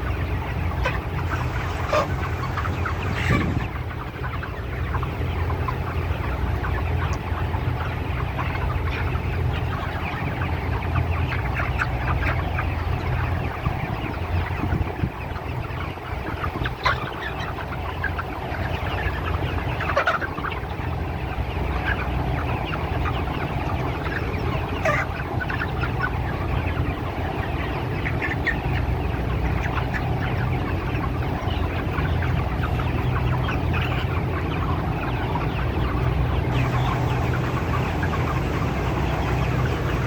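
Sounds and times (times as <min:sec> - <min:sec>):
chickens clucking: 0:00.0 - 0:40.0
steady low hum: 0:33.8 - 0:40.0.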